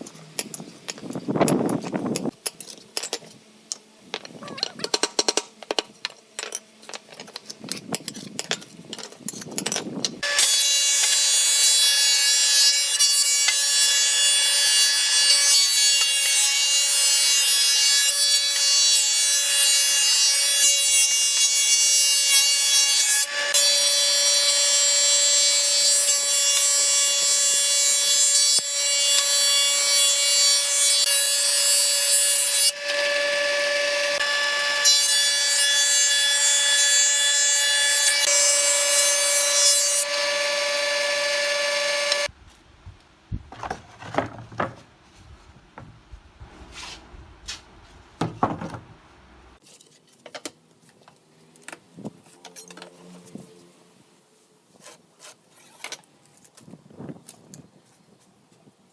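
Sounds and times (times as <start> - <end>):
knocks and handling sounds: 0.0 - 10.2, 43.4 - 53.6
wood cutting or sanding: 10.2 - 42.3
electric power tool whining: 38.2 - 42.3.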